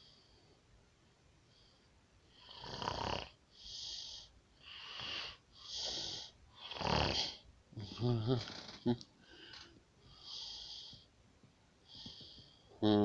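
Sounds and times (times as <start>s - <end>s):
pig snoring: 2.4s - 3.4s, 4.8s - 8.3s.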